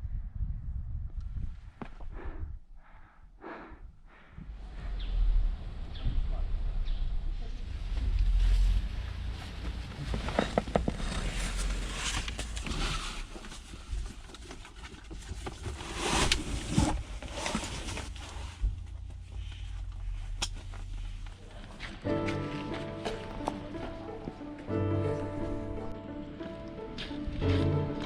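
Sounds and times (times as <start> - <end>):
wind rumbling on microphone: 0.0 - 3.0, 3.7 - 14.2
music: 21.8 - 28.0.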